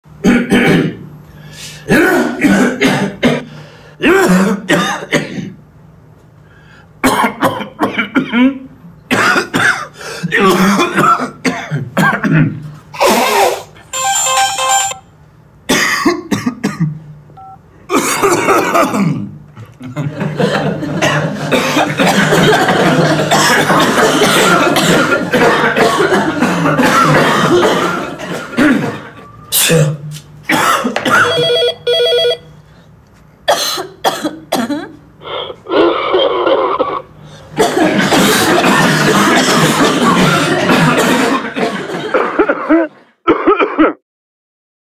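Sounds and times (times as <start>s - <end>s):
harsh throaty coughing: 0.2s - 1.0s, 1.9s - 5.6s, 7.0s - 13.8s, 15.7s - 17.0s, 17.9s - 19.4s, 20.6s - 31.4s, 33.5s - 44.0s.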